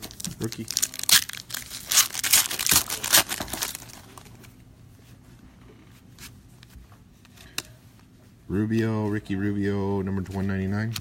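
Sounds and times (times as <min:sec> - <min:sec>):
foil wrapper crinkling and tearing: 0:00.0 - 0:04.5.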